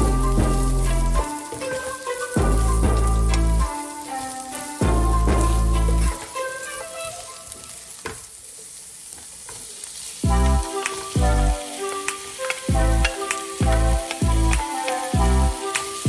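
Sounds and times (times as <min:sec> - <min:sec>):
music with deep bass notes: 0:00.0 - 0:01.3, 0:02.4 - 0:03.8, 0:04.8 - 0:06.2, 0:10.2 - 0:11.6, 0:12.7 - 0:15.6
squid sizzling in a pan: 0:00.0 - 0:16.0.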